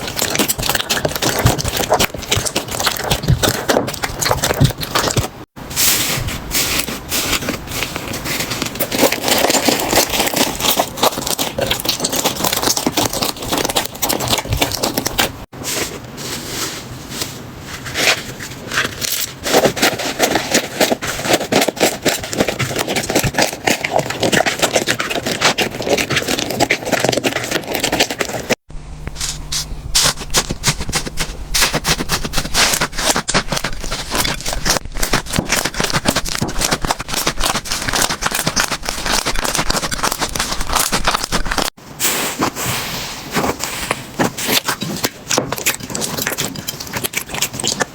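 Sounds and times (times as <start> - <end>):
low steady hum: 28.6 - 47.2
slime squeezed crackling and popping: 29.2 - 41.8.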